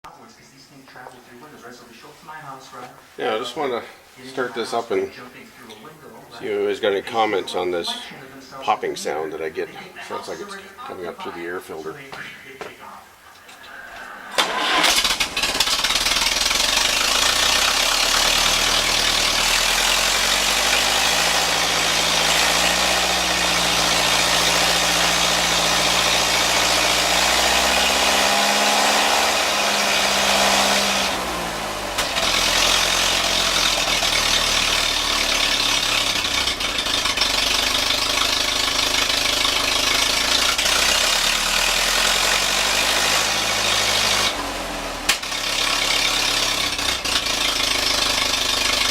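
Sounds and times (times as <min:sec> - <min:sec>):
tractor engine starting and idling: 0:13.6 - 0:48.9.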